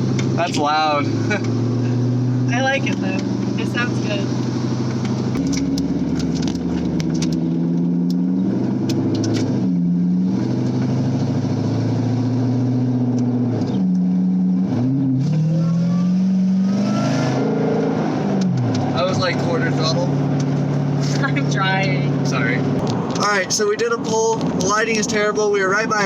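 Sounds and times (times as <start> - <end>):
car engine accelerating: 0.0 - 26.0.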